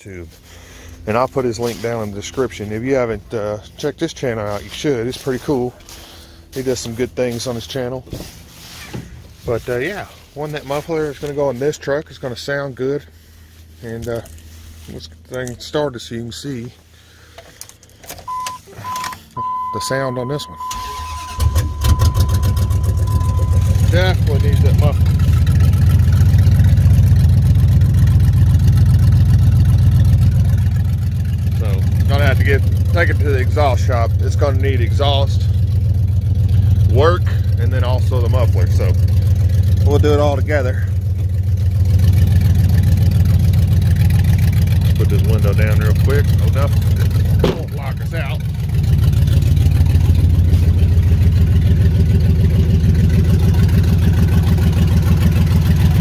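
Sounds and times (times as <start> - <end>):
truck engine idling loud exhaust: 0.0 - 18.0, 18.6 - 56.0.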